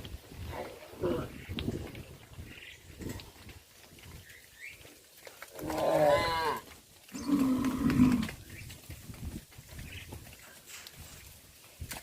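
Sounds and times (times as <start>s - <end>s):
cows mooing: 5.6s - 8.4s.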